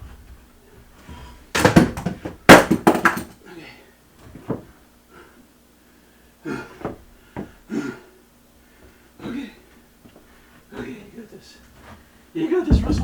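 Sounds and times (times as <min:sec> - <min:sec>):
man breathing and grunting: 0:06.4 - 0:08.2.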